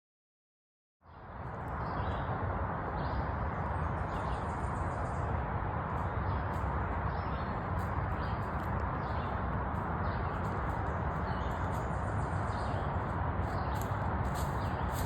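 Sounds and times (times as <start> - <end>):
birds chirping faintly: 1.1 - 15.0
steady rushing noise: 1.1 - 15.0.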